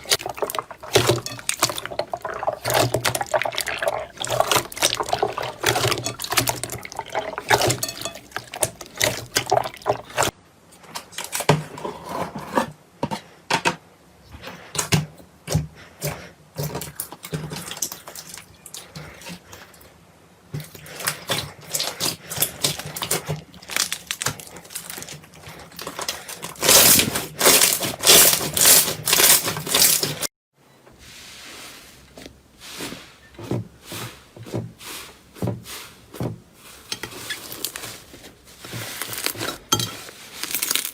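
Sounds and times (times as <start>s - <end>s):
slime squelching by hand: 0.0s - 10.4s, 20.6s - 30.3s, 32.6s - 40.9s
slime crackling: 21.8s - 29.9s, 38.7s - 40.9s.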